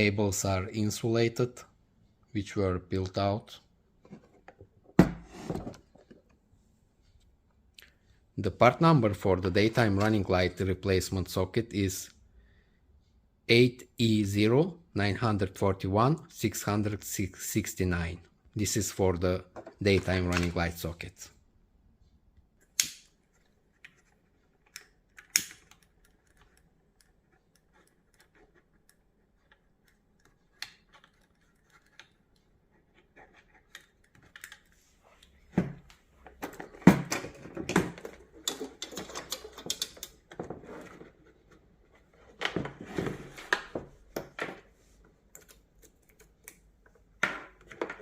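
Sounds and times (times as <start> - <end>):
small hard parts rattling: 36.3 - 41.4.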